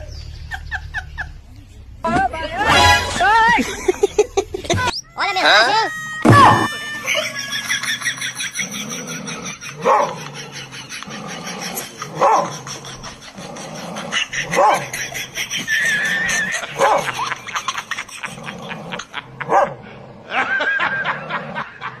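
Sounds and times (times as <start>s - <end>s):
dog barking: 9.8s - 10.3s, 12.1s - 12.6s, 14.5s - 14.9s, 16.8s - 17.2s, 19.5s - 19.8s.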